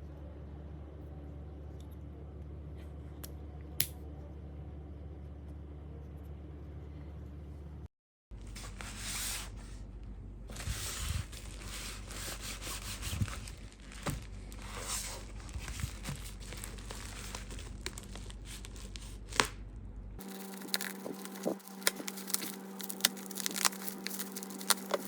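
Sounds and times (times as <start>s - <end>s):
steady low hum: 0.1s - 25.0s
packaging torn and crinkled: 11.4s - 19.5s, 20.2s - 25.0s
sharp clicks and crackles: 20.2s - 25.0s.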